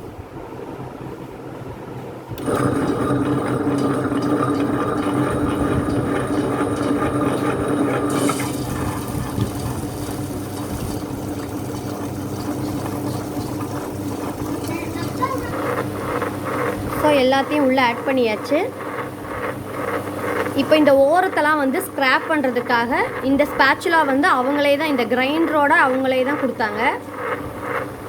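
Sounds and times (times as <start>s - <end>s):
wet grinder humming: 2.4s - 28.0s
water pouring and splashing: 8.0s - 15.2s.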